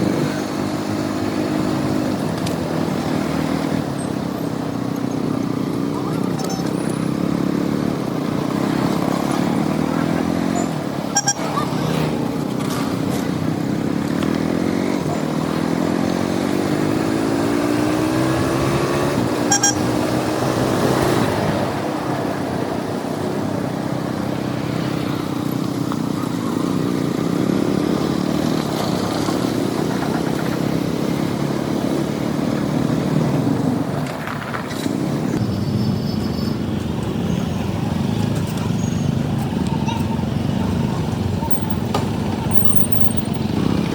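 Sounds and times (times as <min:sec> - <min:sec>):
motorcycle engine accelerating: 0:00.0 - 0:35.9, 0:36.5 - 0:43.9.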